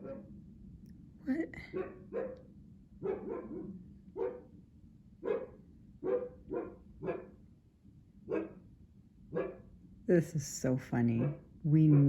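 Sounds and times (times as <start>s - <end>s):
dog barking: 0.0s - 0.3s, 1.7s - 2.4s, 3.0s - 4.5s, 5.2s - 7.4s, 8.3s - 8.6s, 9.3s - 9.6s, 11.2s - 12.0s.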